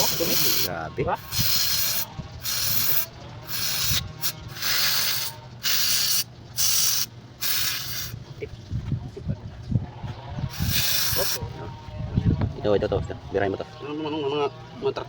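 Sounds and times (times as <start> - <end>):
harsh noise bursts: 0.0 - 8.2, 10.5 - 11.4.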